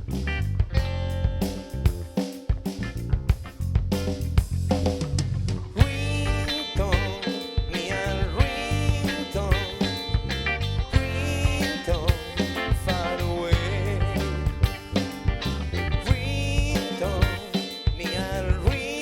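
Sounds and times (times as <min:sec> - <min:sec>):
pop-rock band playing: 0:00.0 - 0:19.0.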